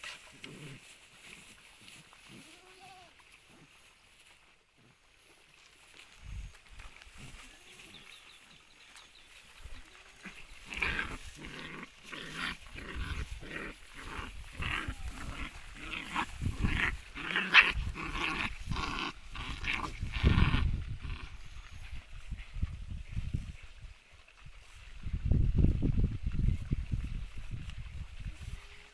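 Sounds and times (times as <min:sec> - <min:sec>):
puppies growling and yapping: 0:09.6 - 0:22.0.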